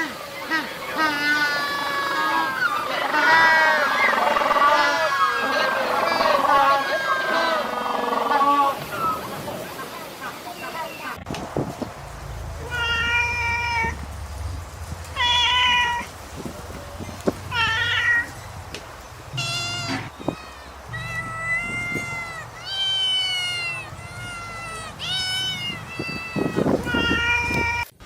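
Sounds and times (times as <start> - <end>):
cat meowing: 12.0 - 14.1, 15.1 - 16.8, 17.4 - 18.4, 19.3 - 27.9.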